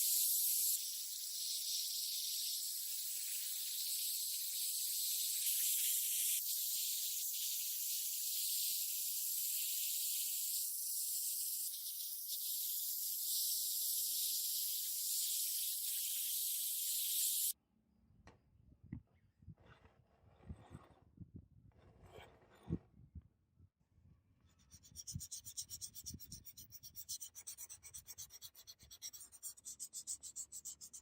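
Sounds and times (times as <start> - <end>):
high-pitched spraying hiss: 0.0 - 17.6.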